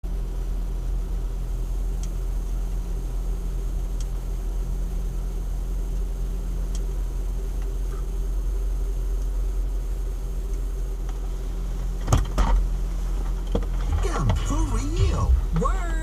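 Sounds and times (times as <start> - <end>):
car engine and road noise: 0.0 - 16.0
faint ticks: 2.0 - 2.9, 3.9 - 4.2, 5.8 - 8.1, 9.1 - 9.4, 10.4 - 11.2.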